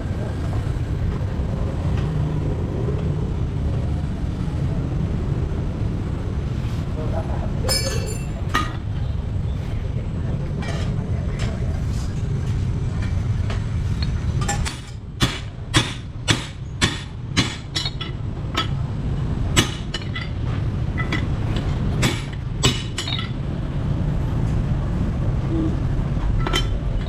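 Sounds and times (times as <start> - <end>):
steady low rumble: 0.0 - 27.0
metal tools tapping engine parts: 7.7 - 8.8, 16.8 - 18.8, 19.6 - 23.4.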